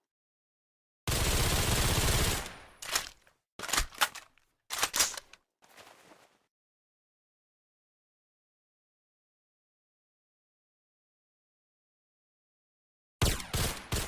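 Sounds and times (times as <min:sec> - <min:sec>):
faint rustle: 0:05.7 - 0:06.4.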